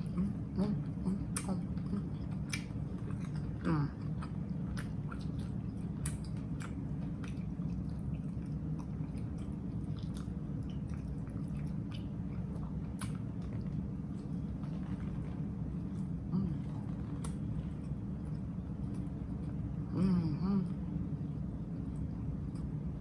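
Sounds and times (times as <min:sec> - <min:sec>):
chewing with mouth clicks: 0:00.0 - 0:19.8, 0:20.8 - 0:23.0
low hum: 0:00.0 - 0:23.0
soft crunches of lettuce: 0:01.7 - 0:19.7.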